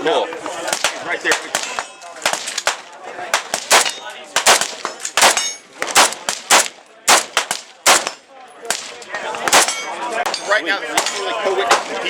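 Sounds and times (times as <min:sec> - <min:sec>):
gunshots: 0:00.7 - 0:09.8.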